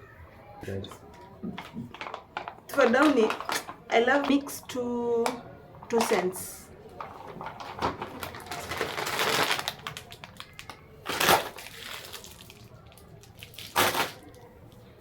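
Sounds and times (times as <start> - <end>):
plastic packaging crinkling: 1.6 - 4.5, 6.9 - 14.9.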